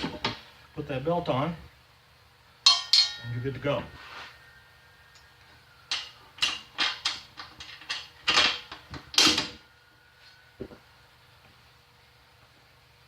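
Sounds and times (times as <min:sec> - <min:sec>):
short metallic ring: 0:02.6 - 0:03.5
metal parts knocking and clanking: 0:05.9 - 0:09.6.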